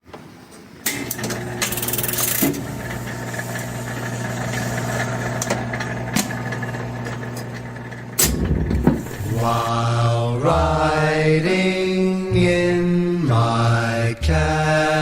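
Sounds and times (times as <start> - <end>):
jukebox mechanism clunks and clicks: 0.0 - 3.1, 4.5 - 9.6
jukebox motor hum: 0.0 - 9.8.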